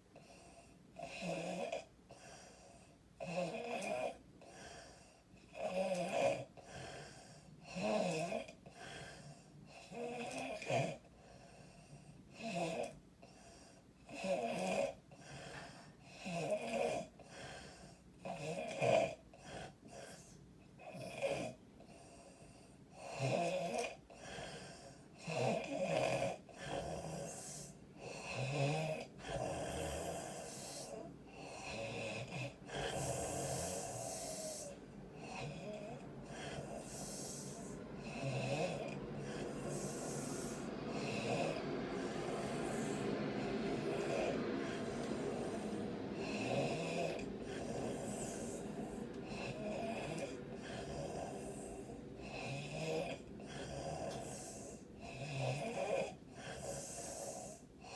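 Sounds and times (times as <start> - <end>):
woman snoring loudly: 1.0 - 1.9, 3.2 - 4.2, 5.5 - 7.0, 7.7 - 8.5, 14.1 - 15.3, 16.1 - 17.2, 23.0 - 57.9.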